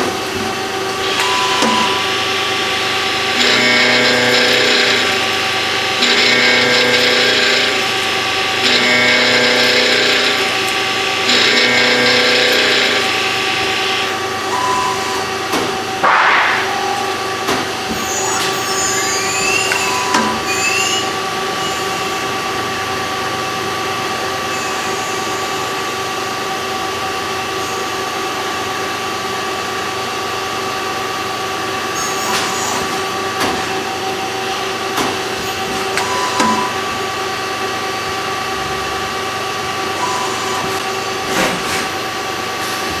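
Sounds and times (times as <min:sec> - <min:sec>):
machine tool whining: 0:00.0 - 0:41.4
spindle whine rising: 0:00.5 - 0:28.6
cutting noise: 0:01.0 - 0:14.2, 0:15.0 - 0:26.4.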